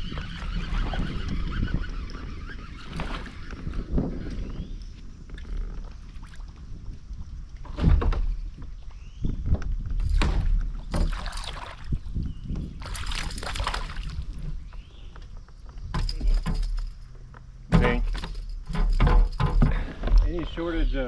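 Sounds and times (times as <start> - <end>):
water splashing around kayak: 10.0 - 12.1, 12.7 - 15.0
knocks against kayak hull: 17.7 - 20.3.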